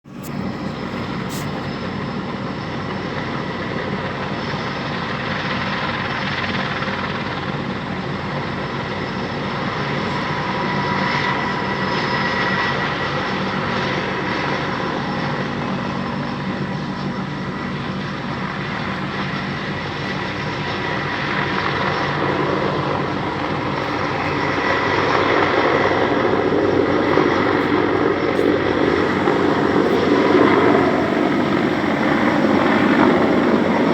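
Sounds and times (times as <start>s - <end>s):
helicopter engine and rotor: 0.0s - 33.9s
whining tones: 26.2s - 33.9s.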